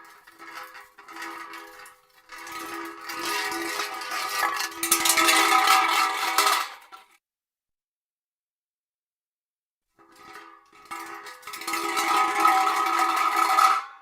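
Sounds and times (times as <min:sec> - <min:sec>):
metal hubcap clattering on concrete: 0:00.0 - 0:07.2, 0:10.0 - 0:14.0.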